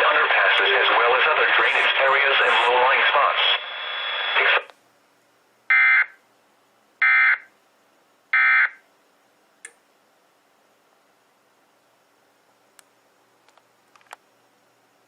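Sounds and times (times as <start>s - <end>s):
recorded warning voice: 0.0s - 3.7s, 4.3s - 4.7s.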